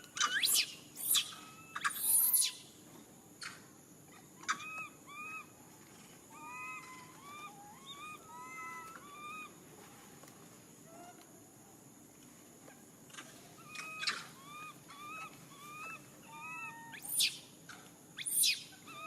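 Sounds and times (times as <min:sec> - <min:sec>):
high whimpering calls: 0:00.2 - 0:02.6, 0:13.5 - 0:17.4, 0:18.2 - 0:19.0
baby monkey crying: 0:13.6 - 0:17.3.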